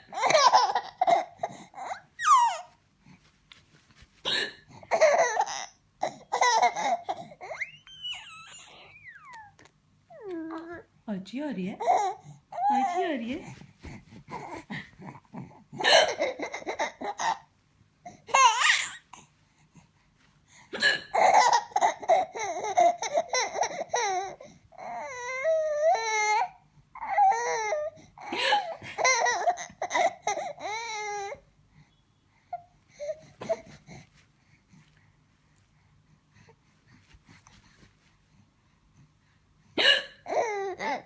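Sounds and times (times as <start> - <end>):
baby laughing and squealing: 0.1 - 2.8, 4.9 - 9.6, 18.3 - 19.1, 20.8 - 31.4.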